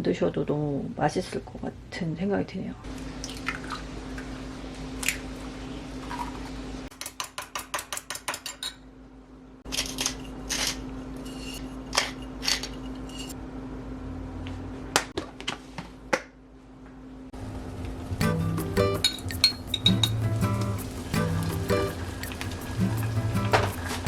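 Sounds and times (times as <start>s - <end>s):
utensils clinking against dishes: 9.7s - 13.4s, 18.9s - 24.0s.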